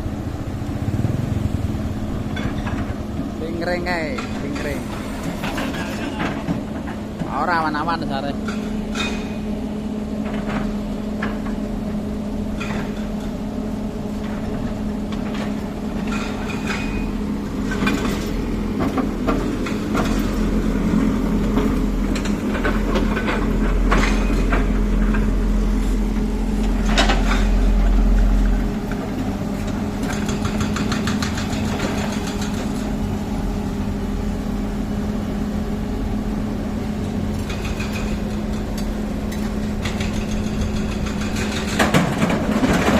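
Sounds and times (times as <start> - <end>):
diesel machinery engine running: 0.0 - 42.9
metallic knocks and clanks: 2.2 - 7.5, 21.4 - 25.3, 26.6 - 28.6, 37.3 - 42.9.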